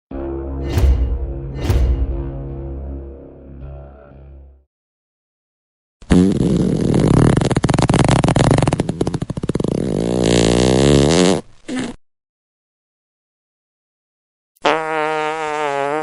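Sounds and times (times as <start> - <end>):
sputtering fart: 6.0 - 12.0, 14.6 - 16.0.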